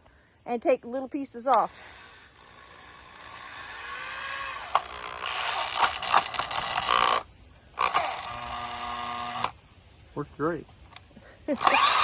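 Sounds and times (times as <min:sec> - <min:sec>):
mechanical grinding: 0:01.6 - 0:09.6, 0:11.6 - 0:12.0.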